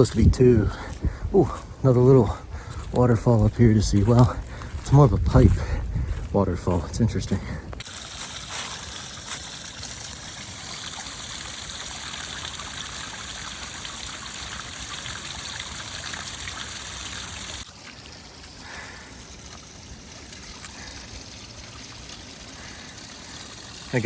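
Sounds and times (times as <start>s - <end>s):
water pouring from a pipe: 7.8s - 24.0s.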